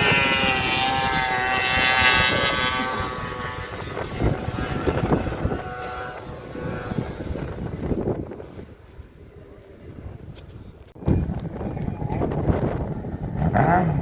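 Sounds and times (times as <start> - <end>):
high-revving engine passing by: 0.0 - 8.1, 12.6 - 14.0
wind buffeting microphone: 0.0 - 14.0.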